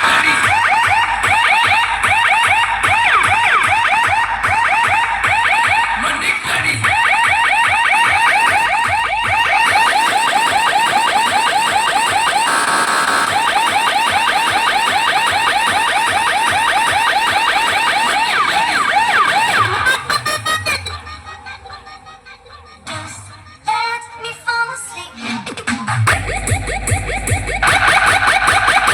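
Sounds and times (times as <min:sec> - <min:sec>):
electronic siren chirps and whoops: 0:00.0 - 0:06.1, 0:06.8 - 0:22.6, 0:26.1 - 0:28.9.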